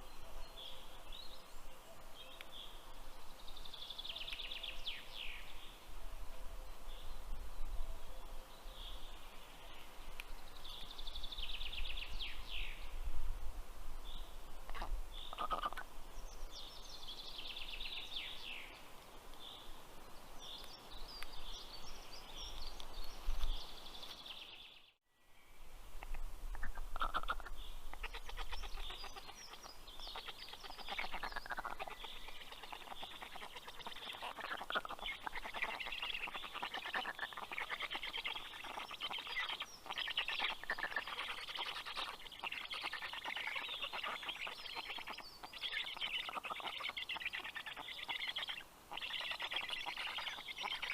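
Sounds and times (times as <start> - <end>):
small birds chirping: 14.0 - 25.0, 26.0 - 50.9
raspy chick calls: 14.7 - 15.9, 26.0 - 50.9.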